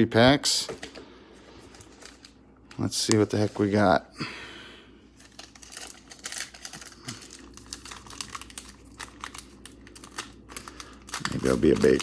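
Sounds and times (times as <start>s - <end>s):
wrapper crinkling: 1.6s - 3.9s, 5.1s - 12.0s
wrapper tearing: 5.2s - 12.0s.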